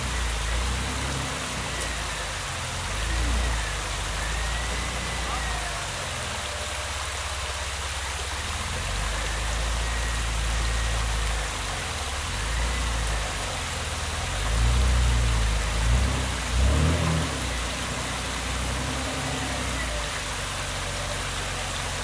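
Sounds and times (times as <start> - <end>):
creek water rushing: 0.0 - 22.0
vehicle engine idling: 0.0 - 22.0.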